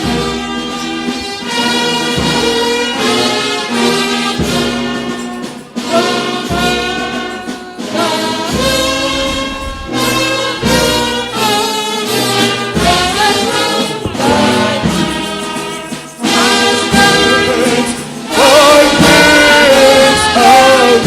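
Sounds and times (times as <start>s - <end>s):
brass music playing held chords: 0.0s - 21.0s.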